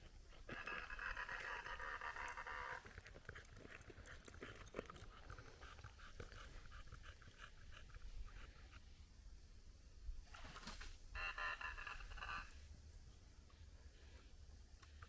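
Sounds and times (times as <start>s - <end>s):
buzzy animal call: 0.0s - 2.9s, 11.2s - 12.6s
rapid repeated animal notes: 0.0s - 8.8s.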